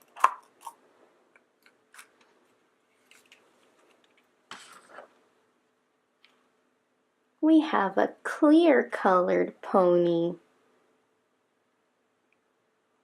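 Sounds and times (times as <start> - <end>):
plastic egg popping open: 0.0 - 0.8
crinkly rustle: 2.0 - 5.1.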